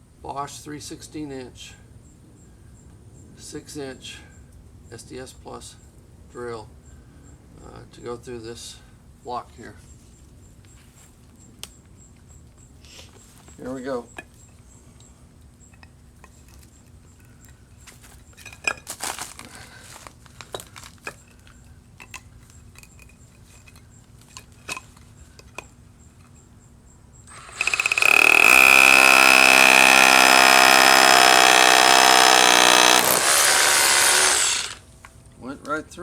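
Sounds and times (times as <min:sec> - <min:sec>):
high-pitched drill whine: 0:27.3 - 0:34.8
rotary hammer drill drilling: 0:27.3 - 0:34.8.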